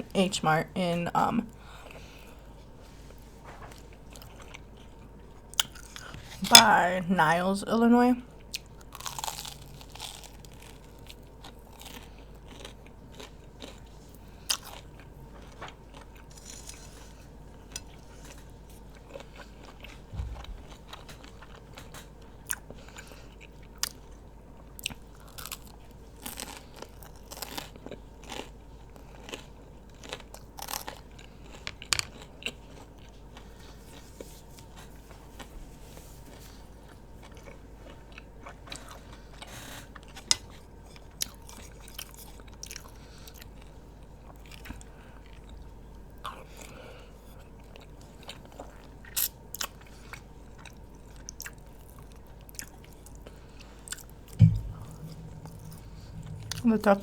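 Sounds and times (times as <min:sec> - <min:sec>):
person chewing food: 0:03.8 - 0:06.4, 0:08.4 - 0:35.5, 0:36.8 - 0:56.8
mouth clicks and smacks: 0:54.4 - 0:56.7.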